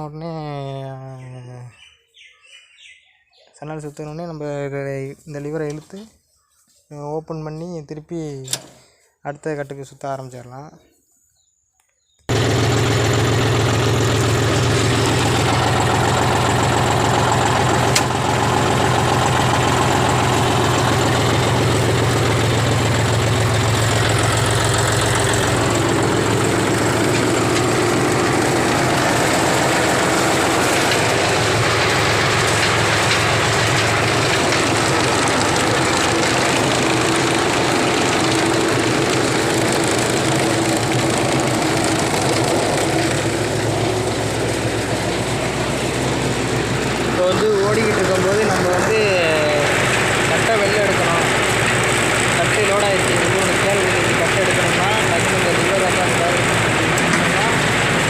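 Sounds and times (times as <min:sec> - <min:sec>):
baler chain and rollers turning: 0:12.3 - 0:58.0
tractor engine drone: 0:12.3 - 0:58.0.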